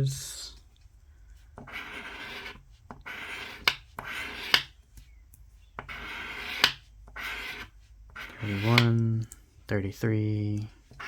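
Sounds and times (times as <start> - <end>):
coin scraping scratch card: 1.6 - 4.8, 5.8 - 9.0.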